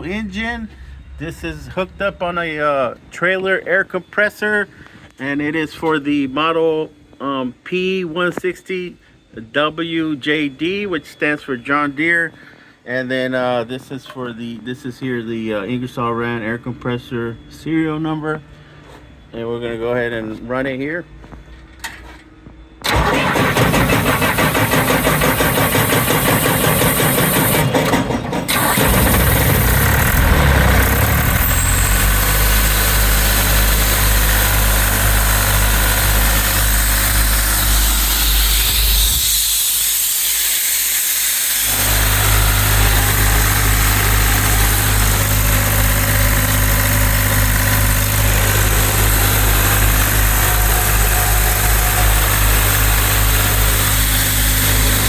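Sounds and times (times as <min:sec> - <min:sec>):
diesel engine running: 0:00.0 - 0:03.2, 0:22.8 - 0:40.5, 0:41.5 - 0:55.0
starter cranking engine: 0:22.8 - 0:55.0.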